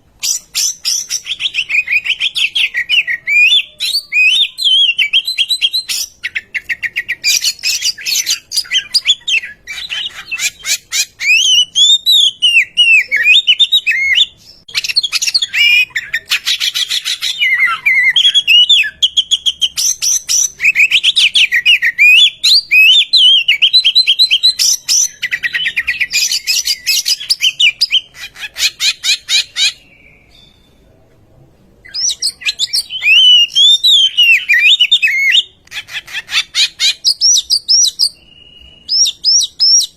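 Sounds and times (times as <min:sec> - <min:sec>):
bird singing whistled notes: 0:00.2 - 0:28.1, 0:28.8 - 0:30.8, 0:31.9 - 0:35.5, 0:36.6 - 0:39.9.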